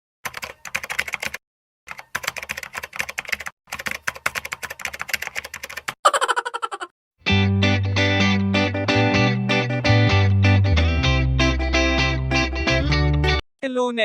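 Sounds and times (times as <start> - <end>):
computer keyboard typing: 0.2 - 6.0.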